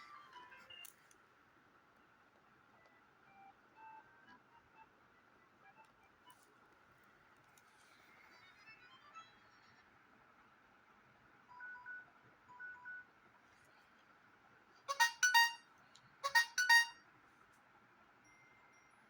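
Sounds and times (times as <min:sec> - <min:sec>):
bright phone chime: 0:14.9 - 0:15.6, 0:16.2 - 0:17.0.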